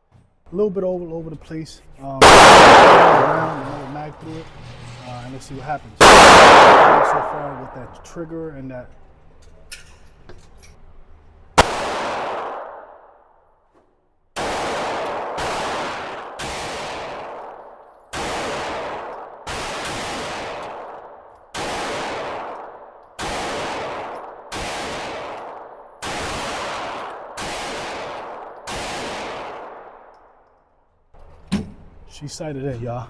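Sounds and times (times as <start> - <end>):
pistol shots echoing indoors: 2.2 - 4.0, 6.0 - 7.8, 11.6 - 13.5, 14.4 - 30.8.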